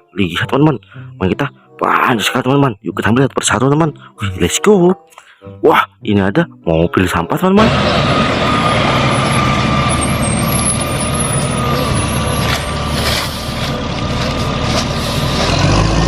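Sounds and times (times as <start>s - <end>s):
garbage truck running: 7.6s - 16.0s.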